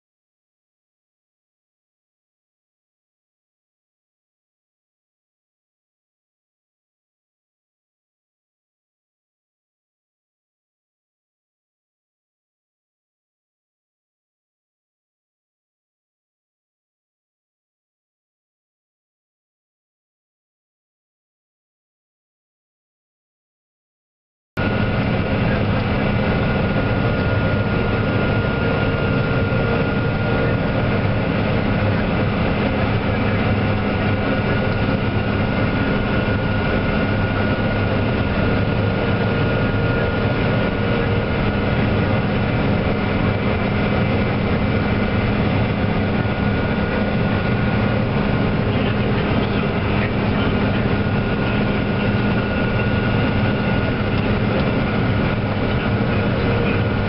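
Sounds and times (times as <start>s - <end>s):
machinery engine drone: 24.6s - 57.0s
steady machine whine: 24.6s - 57.0s.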